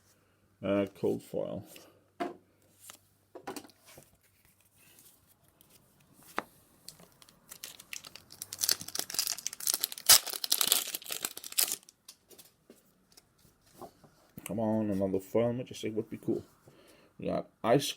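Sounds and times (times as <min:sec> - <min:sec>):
plastic foil wrapper crinkling: 0:06.9 - 0:12.2.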